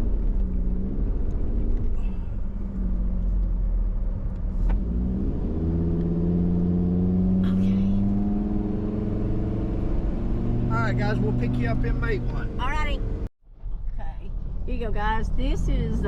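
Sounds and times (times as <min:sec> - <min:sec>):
loud engine through busted muffler: 0:04.5 - 0:13.3.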